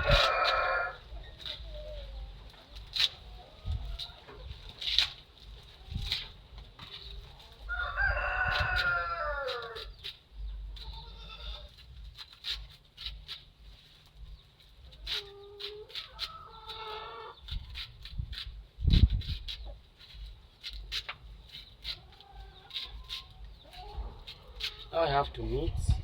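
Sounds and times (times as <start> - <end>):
rooster crowing: 0.0 - 1.0, 7.7 - 9.8.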